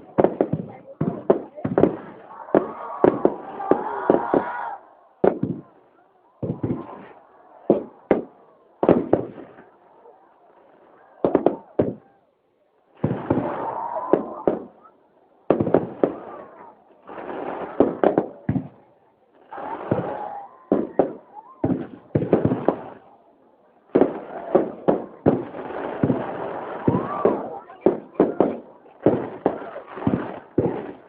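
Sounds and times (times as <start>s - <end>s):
fireworks bangs: 0.0s - 12.2s, 12.9s - 23.2s, 23.9s - 31.0s
fireworks rumbling crackle: 0.0s - 12.2s, 12.8s - 31.0s.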